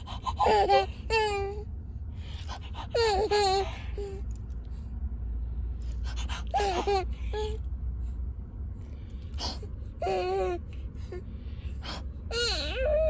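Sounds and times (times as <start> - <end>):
steady low rumble: 0.0 - 13.0
baby crying: 12.3 - 13.0.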